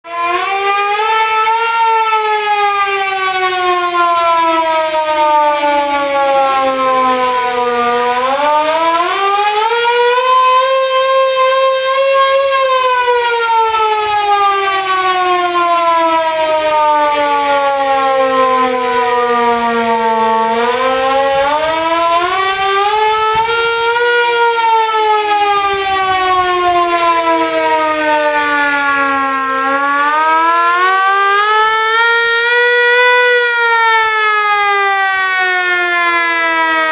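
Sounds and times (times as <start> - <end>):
air-raid siren wailing: 0.0 - 36.9
second siren tone: 0.1 - 36.9.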